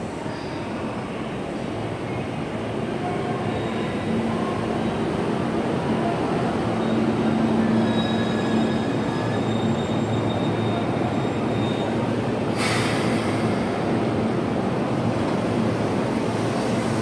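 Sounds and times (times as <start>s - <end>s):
electric train rumbling: 1.2s - 17.0s
wheel and brake squealing: 7.8s - 12.0s
air hiss: 12.5s - 13.8s.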